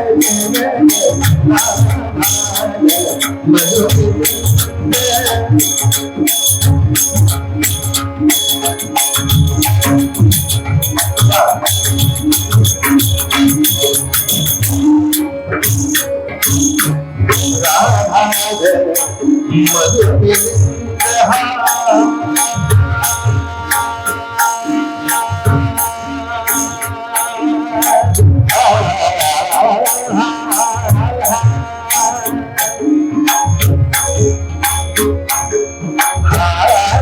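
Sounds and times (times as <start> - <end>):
person singing: 0.0 - 6.1, 17.5 - 33.6, 36.2 - 37.0
jingling hand percussion: 0.0 - 37.0
sustained organ-like notes: 6.9 - 37.0.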